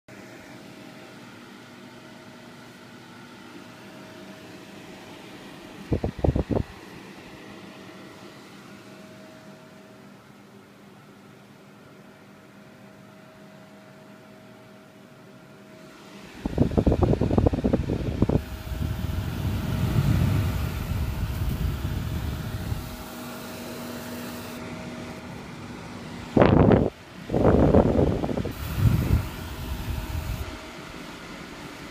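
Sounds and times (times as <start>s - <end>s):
dehumidifier fan humming: 0.1s - 31.9s
air stream buffeting microphone: 16.4s - 23.1s, 26.3s - 30.6s.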